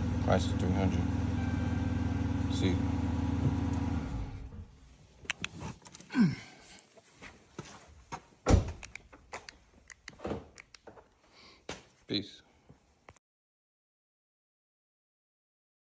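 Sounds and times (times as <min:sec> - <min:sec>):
car engine idling: 0:00.0 - 0:04.8.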